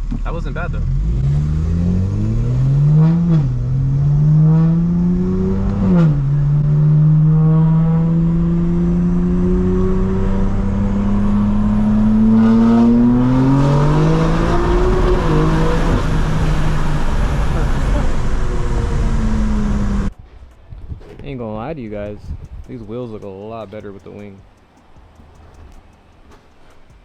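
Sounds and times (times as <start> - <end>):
car engine accelerating: 0.0 - 20.2.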